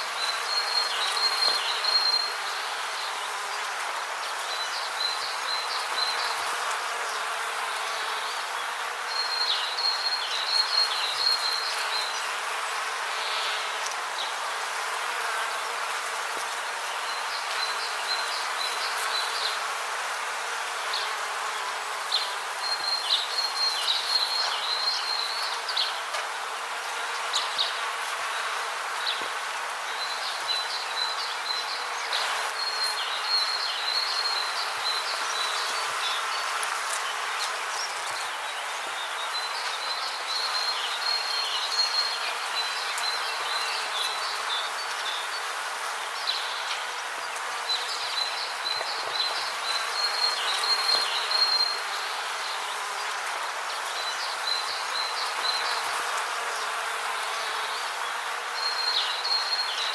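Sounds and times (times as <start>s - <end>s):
insect buzzing trill: 0.0s - 59.9s.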